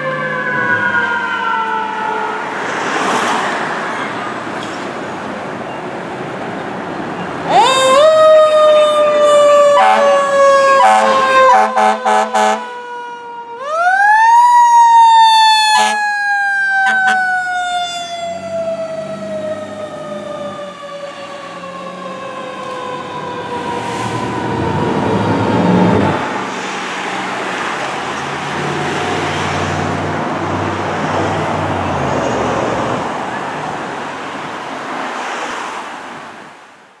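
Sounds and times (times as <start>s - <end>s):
siren winding down: 0.0s - 2.6s, 7.5s - 26.5s
heavy truck engine: 18.3s - 35.1s.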